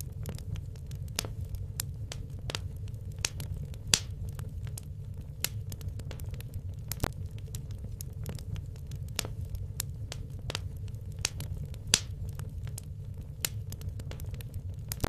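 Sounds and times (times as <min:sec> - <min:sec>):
logs crackling in fireplace: 0:00.0 - 0:15.0
low rumble: 0:00.0 - 0:15.0.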